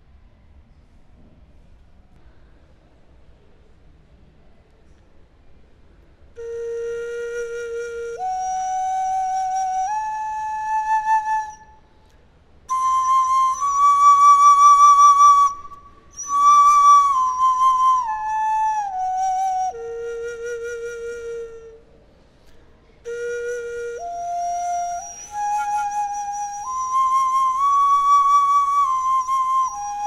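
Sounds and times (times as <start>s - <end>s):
flute playing held notes: 6.4s - 11.8s, 12.7s - 21.9s, 23.1s - 30.0s.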